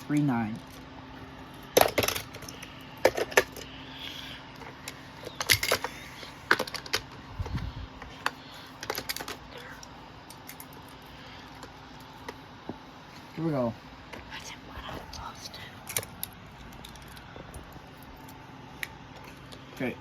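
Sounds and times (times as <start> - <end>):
toy cars and plastic track clicking: 5.4 - 7.1.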